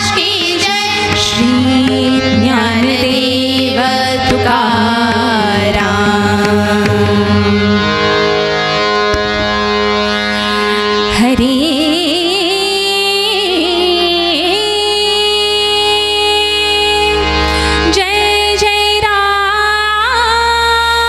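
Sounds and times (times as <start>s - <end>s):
women singing: 0.0s - 7.8s
drum strikes: 4.0s - 7.8s.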